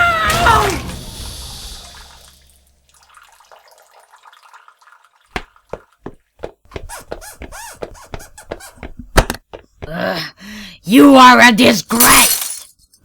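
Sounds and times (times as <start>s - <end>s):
water dripping: 2.2s - 6.4s.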